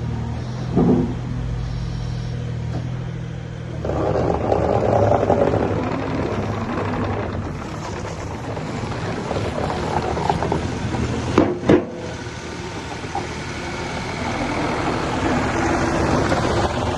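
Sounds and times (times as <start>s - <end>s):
excavator diesel engine running: 0.0s - 16.9s
sharp knocks: 0.7s - 1.2s.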